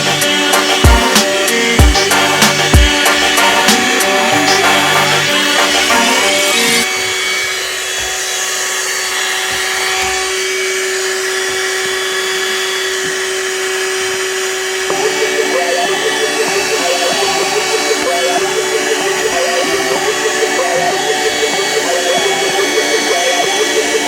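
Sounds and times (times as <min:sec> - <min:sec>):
vacuum cleaner running: 0:00.0 - 0:24.0.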